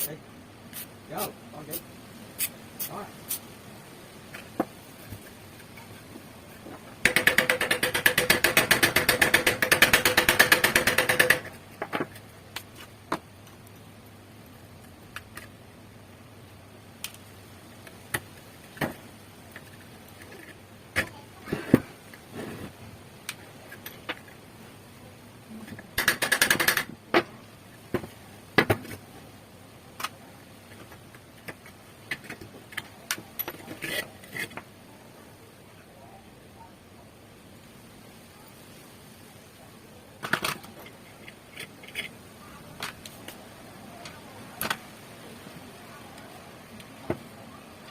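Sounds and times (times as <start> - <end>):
fast mechanical rattle: 7.0 - 11.6, 26.0 - 26.9
sharp metal clicks and knocks: 7.0 - 13.6, 25.7 - 28.8.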